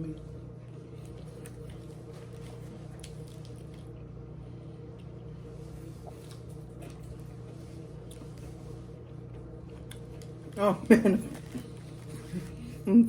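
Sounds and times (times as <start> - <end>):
steady low hum: 0.0 - 13.0
person chewing: 0.9 - 4.0, 5.9 - 8.6.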